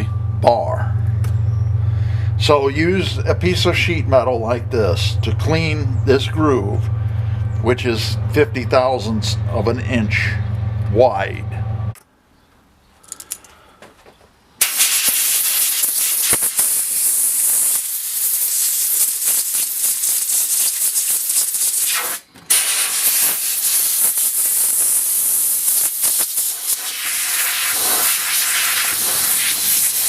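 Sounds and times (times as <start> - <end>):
pressurised jet hissing: 14.6 - 20.4, 21.9 - 30.0.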